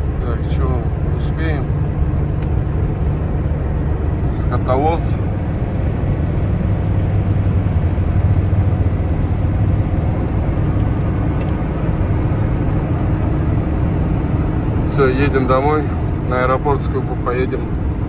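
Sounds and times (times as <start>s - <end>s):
diesel engine drone in cab: 0.0s - 18.0s
road noise: 0.0s - 18.0s.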